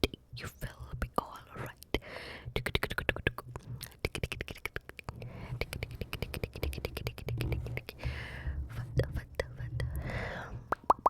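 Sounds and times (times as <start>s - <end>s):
tongue and lip clicks: 2.6s - 8.0s, 10.7s - 11.0s.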